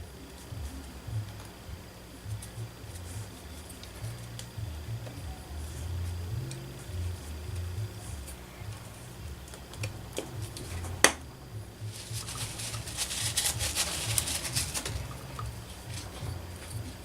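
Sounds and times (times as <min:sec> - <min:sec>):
low pulsing hum: 0:00.0 - 0:17.0
metal parts clicking and scraping: 0:11.9 - 0:17.0.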